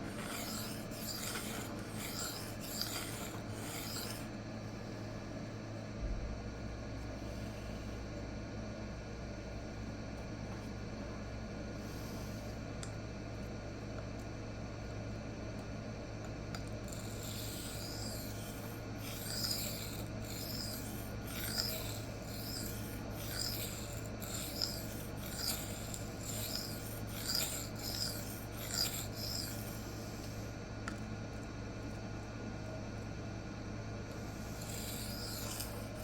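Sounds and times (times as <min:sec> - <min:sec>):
knife scraping on sharpening plate: 0:00.0 - 0:04.3, 0:16.9 - 0:29.6.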